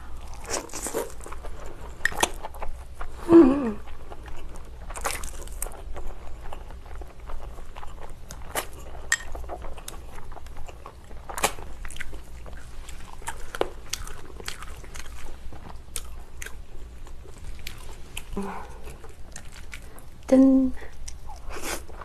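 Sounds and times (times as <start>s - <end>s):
steady low hum: 0.0s - 22.0s
chewing and biting: 0.1s - 3.2s, 3.8s - 20.2s.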